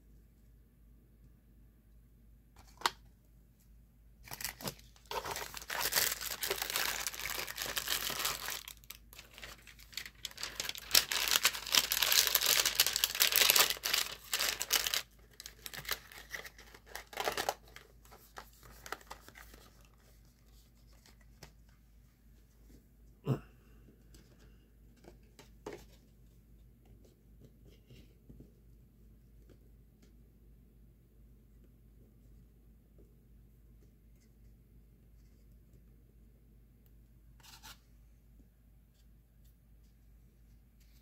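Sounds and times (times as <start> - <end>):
plastic wrapping crinkling and tearing: 4.2 - 19.9.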